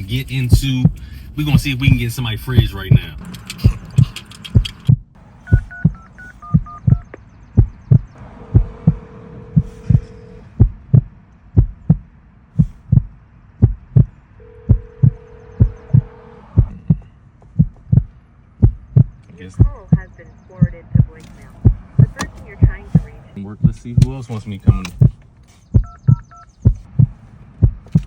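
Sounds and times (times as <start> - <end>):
steady low thump: 0.4 - 3.8, 4.6 - 28.0
phone ringback tone: 5.5 - 7.1, 8.8 - 10.6, 14.4 - 16.1
keypad beeps: 5.5 - 7.2, 25.8 - 26.6.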